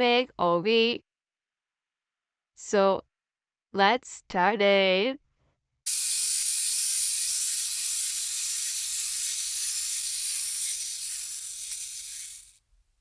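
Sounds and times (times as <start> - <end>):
steady hiss: 5.9 - 12.6.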